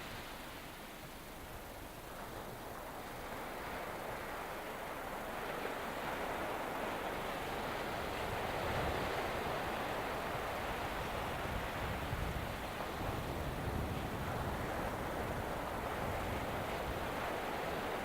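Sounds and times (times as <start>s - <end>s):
wind rumbling on microphone: 7.2s - 18.0s.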